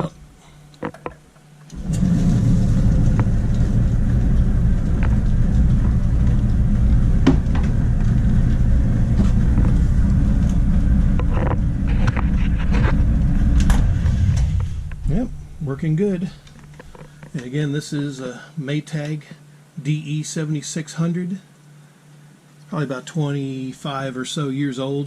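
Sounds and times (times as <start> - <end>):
clothes dryer rumbling: 0.0 - 1.1, 1.7 - 17.6.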